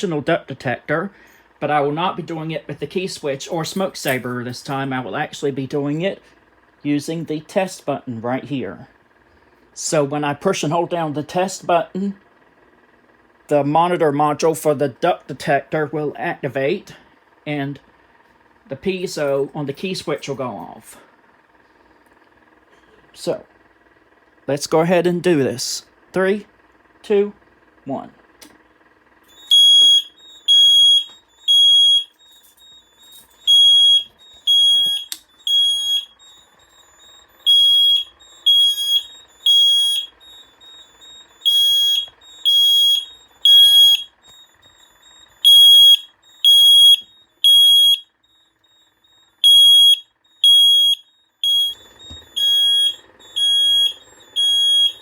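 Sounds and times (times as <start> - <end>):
piezo sounder beeping: 29.3 - 55.0.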